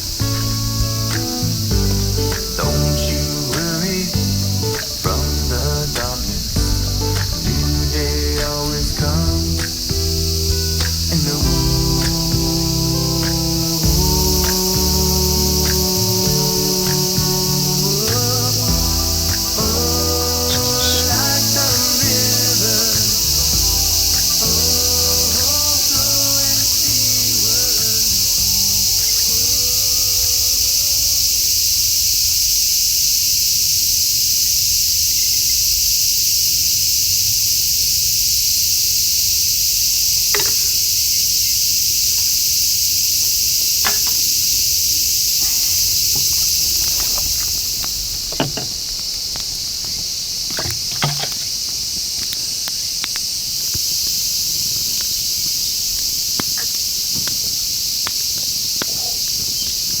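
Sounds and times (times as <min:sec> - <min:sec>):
crickets and insects chirping: 0:00.0 - 1:00.0
sharp clicks and knocks: 0:45.4 - 0:49.5, 0:50.5 - 0:51.5.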